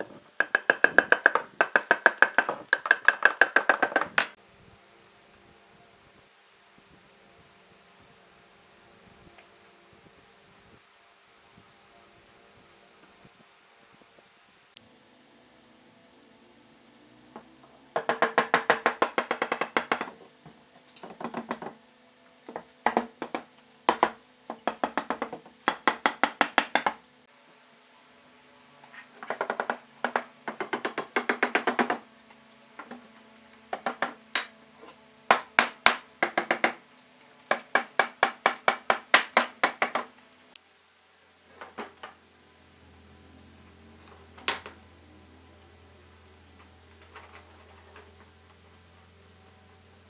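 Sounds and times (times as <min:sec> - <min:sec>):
rapid sharp knocking: 0:00.4 - 0:04.4, 0:18.0 - 0:20.2, 0:22.8 - 0:27.0, 0:29.2 - 0:32.0, 0:35.3 - 0:36.8, 0:37.5 - 0:40.1.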